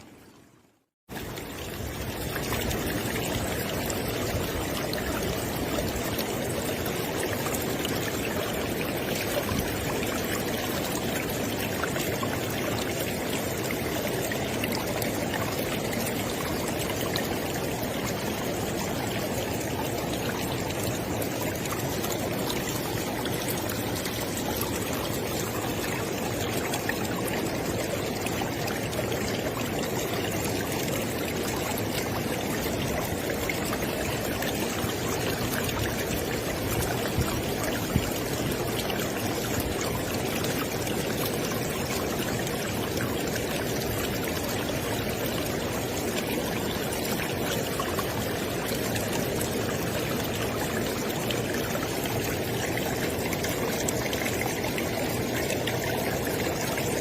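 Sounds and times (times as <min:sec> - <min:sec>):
river water flowing: 0:00.0 - 0:57.0.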